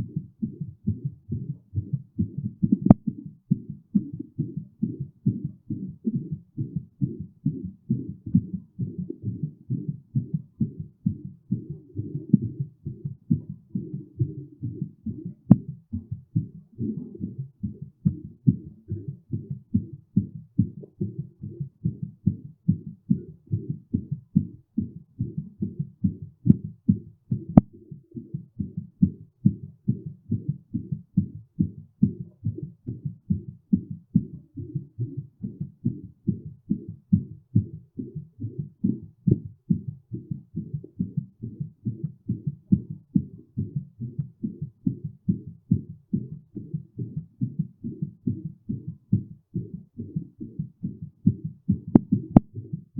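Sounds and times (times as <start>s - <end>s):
heartbeat thuds: 0.0s - 52.9s.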